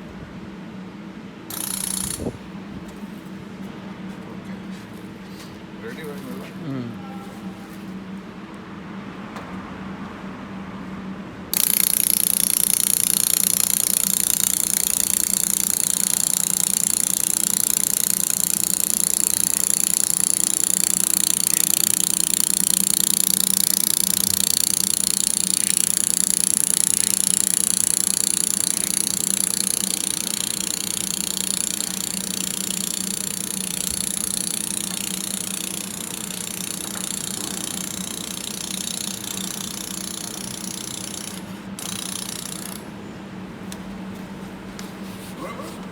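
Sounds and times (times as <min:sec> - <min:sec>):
machine hum: 0:01.5 - 0:03.5, 0:11.6 - 0:43.6.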